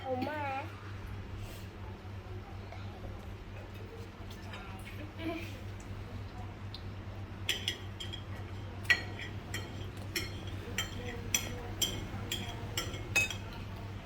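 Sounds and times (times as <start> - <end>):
utensils clinking on dishes: 7.5 - 13.8.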